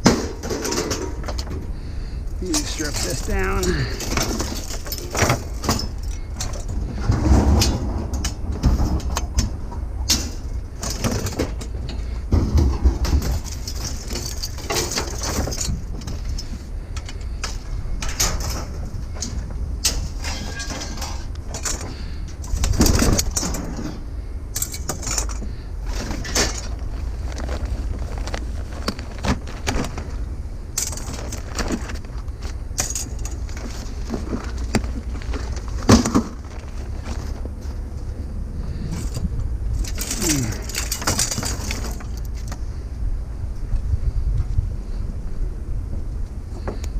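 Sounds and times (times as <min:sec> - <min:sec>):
steady low rumble: 0:00.0 - 0:46.9
metal parts knocking: 0:02.4 - 0:26.8, 0:30.8 - 0:32.1, 0:32.7 - 0:37.2, 0:38.9 - 0:42.6.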